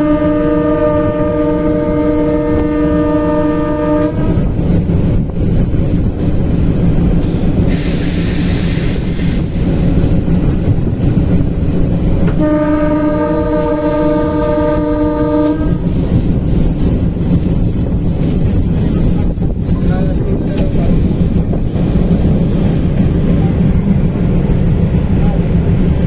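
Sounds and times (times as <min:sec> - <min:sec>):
train horn blast: 0:00.0 - 0:04.6, 0:12.3 - 0:16.2
train rumbling: 0:00.0 - 0:26.0.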